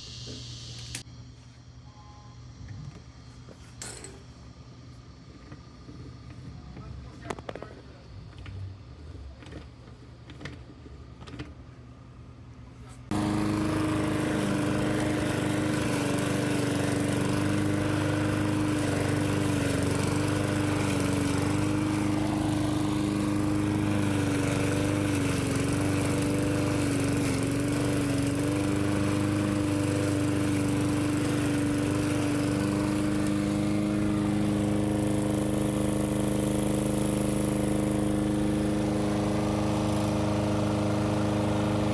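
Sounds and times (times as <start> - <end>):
lawnmower engine running: 13.1 - 41.9.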